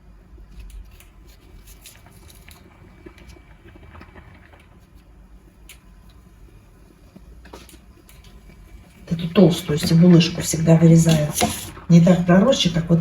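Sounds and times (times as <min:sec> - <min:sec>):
knife cutting onion: 0:11.1 - 0:11.8.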